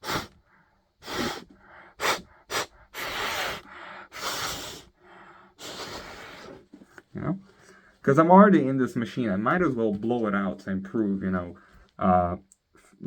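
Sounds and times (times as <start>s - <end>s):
person blowing puffs of breath: 0.0s - 6.6s.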